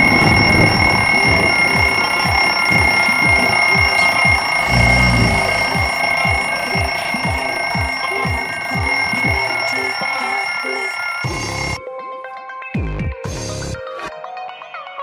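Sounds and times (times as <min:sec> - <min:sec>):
held low synth chord: 0:00.0 - 0:10.5
steady high electronic tone: 0:00.0 - 0:11.8.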